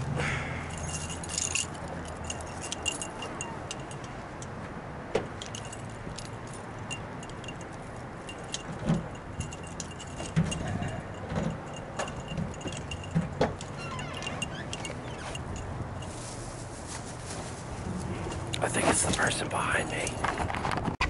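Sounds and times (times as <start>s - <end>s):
keys jangling and clinking: 0.7s - 4.2s, 5.3s - 16.4s.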